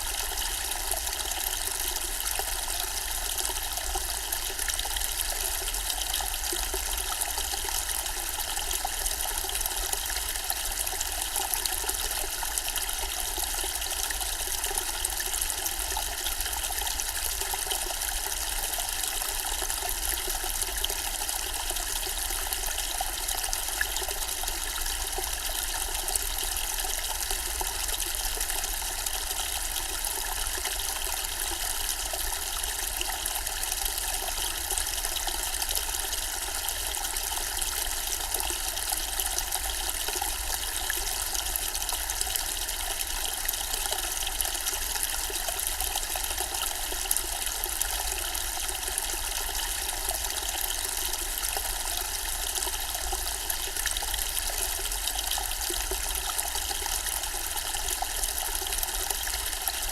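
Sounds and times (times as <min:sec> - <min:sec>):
fountain water trickling and splashing: 0:00.0 - 0:59.9.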